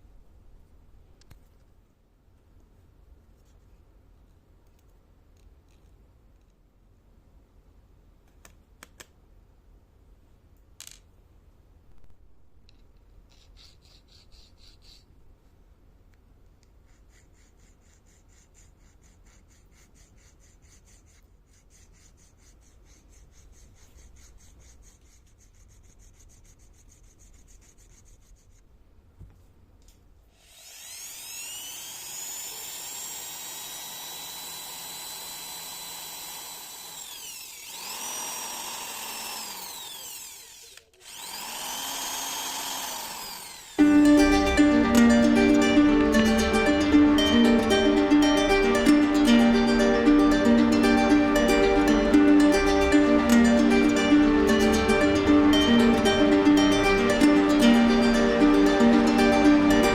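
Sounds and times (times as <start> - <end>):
rubbing and scraping: 16.8 - 28.7
rotary tool whining: 30.4 - 44.6.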